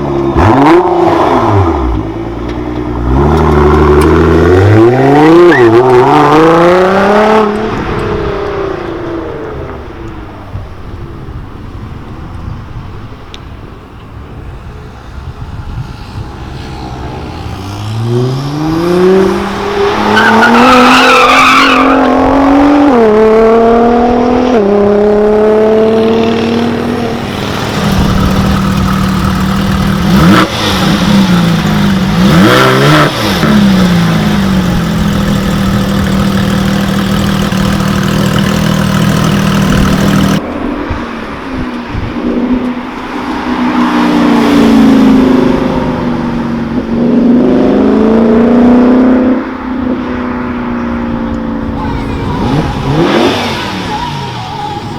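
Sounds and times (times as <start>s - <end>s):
car engine accelerating hard: 0.0s - 9.9s, 16.2s - 40.4s, 43.3s - 54.7s
other engines passing: 14.3s - 54.9s.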